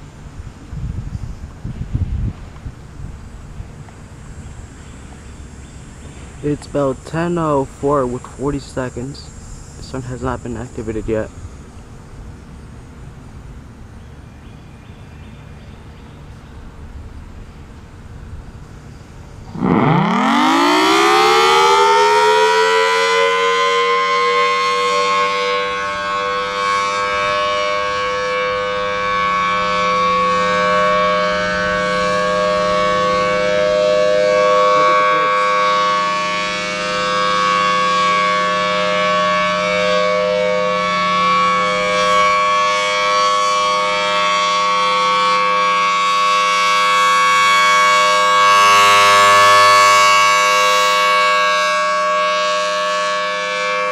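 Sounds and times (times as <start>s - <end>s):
two-tone warning siren wailing: 19.3s - 53.9s.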